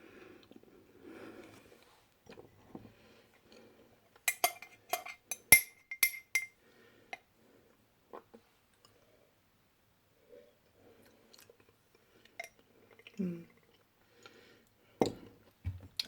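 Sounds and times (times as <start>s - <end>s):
tableware clinking: 4.3s - 6.6s.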